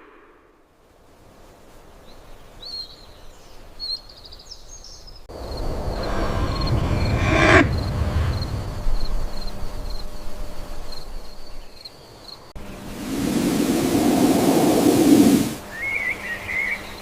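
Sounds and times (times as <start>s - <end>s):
loud rushing noise with rumble: 5.3s - 10.9s, 12.8s - 15.6s
crickets chirping: 5.3s - 17.0s.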